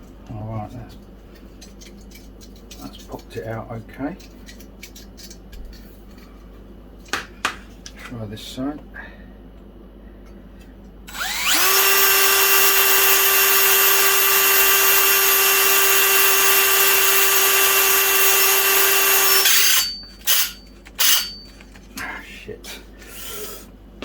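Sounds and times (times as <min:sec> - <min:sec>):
electric drill whining: 0:11.1 - 0:21.4.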